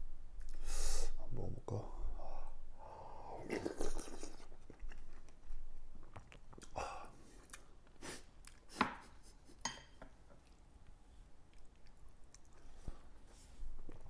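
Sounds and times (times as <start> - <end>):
person sipping: 2.0 - 5.2, 6.1 - 8.7
person chewing: 3.3 - 9.1, 10.4 - 13.0.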